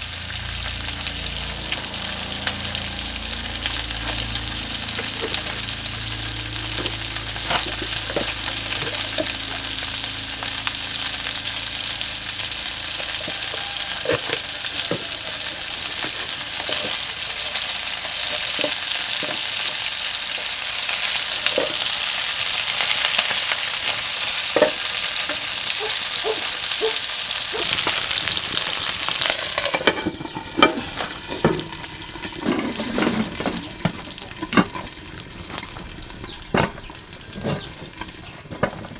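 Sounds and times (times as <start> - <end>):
low hum: 0.0 - 13.1
food sizzling in a pan: 0.0 - 38.9.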